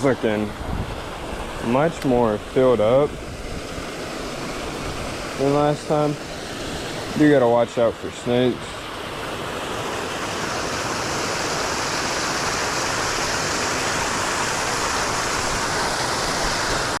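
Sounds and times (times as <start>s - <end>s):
creek water rushing: 0.0s - 17.0s.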